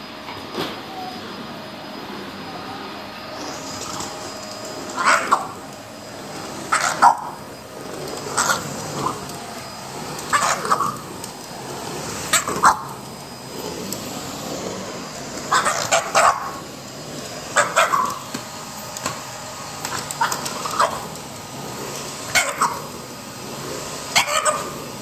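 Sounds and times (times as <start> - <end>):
vacuum cleaner whirring: 0.0 - 25.0
dog barking: 5.0 - 5.6, 6.7 - 7.4, 10.3 - 11.0, 12.3 - 12.9, 15.5 - 16.6, 17.5 - 18.2, 20.0 - 21.1, 22.3 - 22.9, 24.1 - 24.8.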